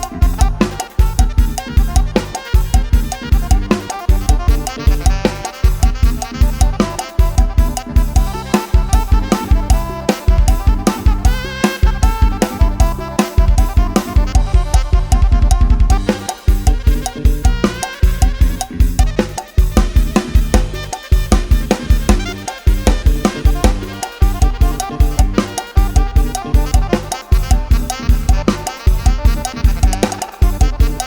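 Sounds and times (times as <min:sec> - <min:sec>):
procession music with drum kit: 0:00.0 - 0:31.0.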